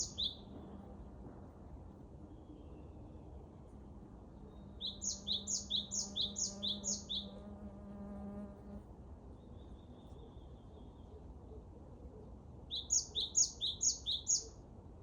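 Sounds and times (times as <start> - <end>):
songbird singing: 0.0 - 1.1, 1.9 - 11.6, 12.7 - 14.6.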